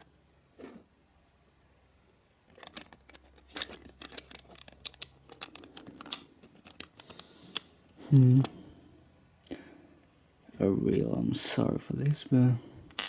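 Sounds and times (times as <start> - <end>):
plastic bricks clicking and rattling: 2.5 - 7.6.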